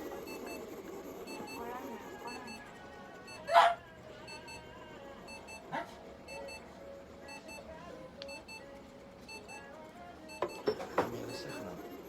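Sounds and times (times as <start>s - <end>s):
double electronic beep: 10.4s - 11.8s.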